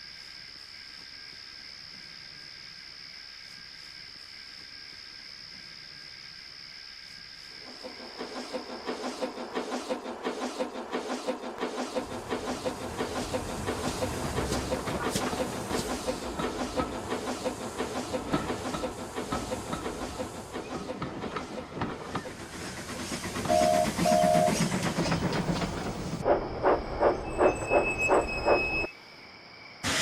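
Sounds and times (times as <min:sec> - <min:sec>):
steam locomotive exhaust beats: 0:07.7 - 0:28.9
wheels clattering over rail joints: 0:07.8 - 0:28.9
steam whistle toots: 0:23.5 - 0:24.7.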